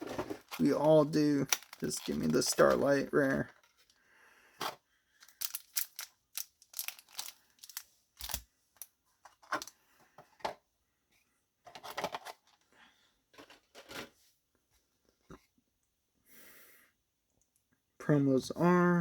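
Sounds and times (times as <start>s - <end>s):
cards and foil wrappers rustling: 0.0s - 4.0s, 4.6s - 9.8s, 11.7s - 12.6s, 13.3s - 14.2s.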